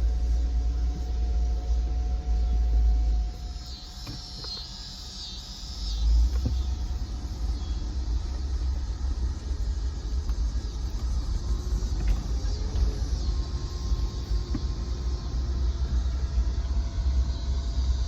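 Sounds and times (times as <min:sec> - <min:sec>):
truck engine and road noise: 0:00.0 - 0:18.0.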